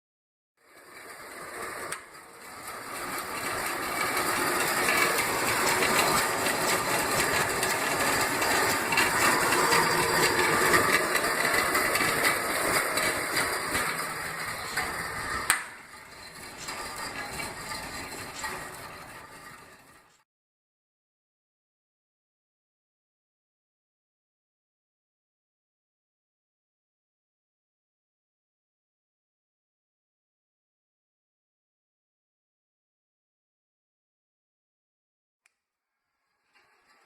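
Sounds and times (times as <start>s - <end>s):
band saw grinding through metal: 0.7s - 20.2s.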